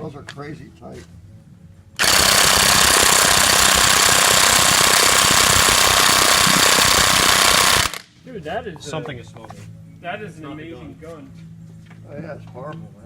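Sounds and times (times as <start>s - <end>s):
impact wrench hammering: 2.0s - 8.0s.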